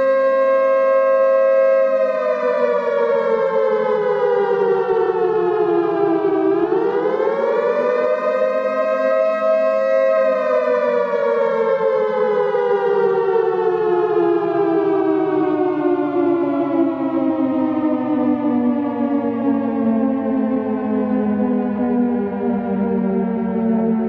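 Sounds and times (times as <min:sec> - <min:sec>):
warning siren wailing: 0:00.0 - 0:24.0.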